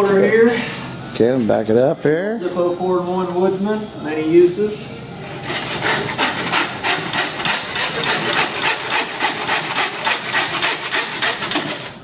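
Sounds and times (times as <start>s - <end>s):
saw blade rasping through bone: 5.2s - 12.0s.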